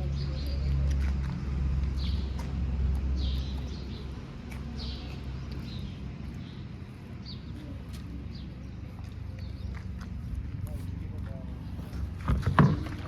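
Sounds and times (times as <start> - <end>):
birds chirping: 0.0 - 10.4.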